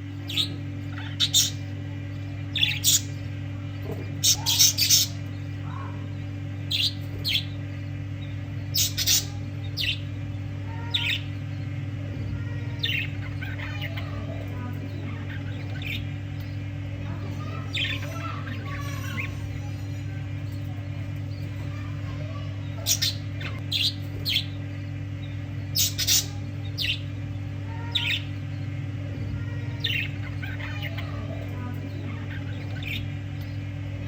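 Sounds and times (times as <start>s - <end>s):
steady low hum: 0.0s - 34.0s
budgerigars chirping: 0.3s - 1.7s, 2.5s - 3.2s, 4.2s - 6.0s, 8.2s - 10.0s, 25.2s - 27.1s.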